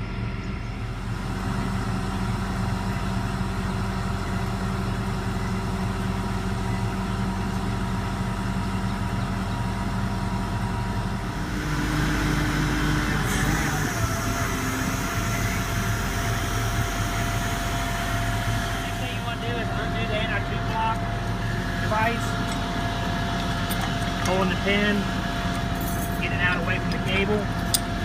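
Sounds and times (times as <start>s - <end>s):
crane diesel engine running: 0.0s - 28.0s
high-pitched whine: 10.0s - 28.0s.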